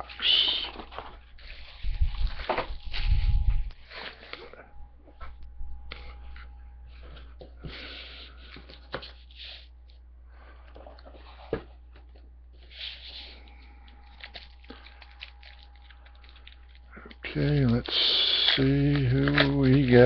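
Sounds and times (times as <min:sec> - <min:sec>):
paper and foil rustling: 0:00.0 - 0:04.6, 0:12.6 - 0:20.0
faint steady hum: 0:00.0 - 0:20.0.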